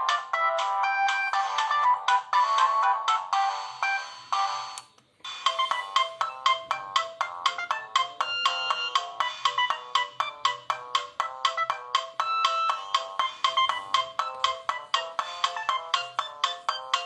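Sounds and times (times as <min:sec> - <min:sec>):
electronic phone ringtone melody: 0:00.0 - 0:17.0.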